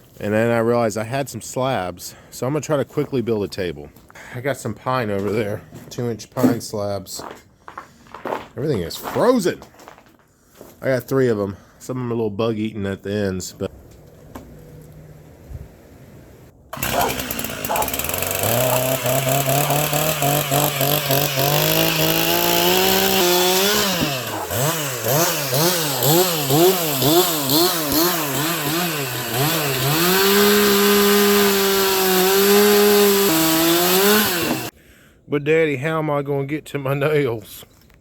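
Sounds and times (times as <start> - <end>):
gas chainsaw running: 14.5 - 34.7.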